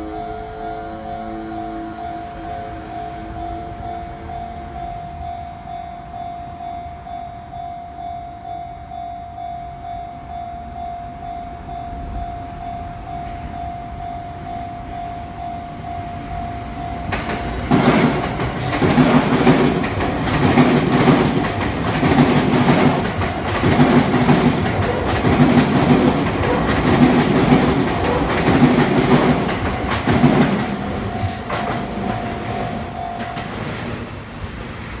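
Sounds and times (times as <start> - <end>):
train wheels clattering on rail joints: 17.0 - 34.2
level crossing bell ringing: 26.1 - 33.8.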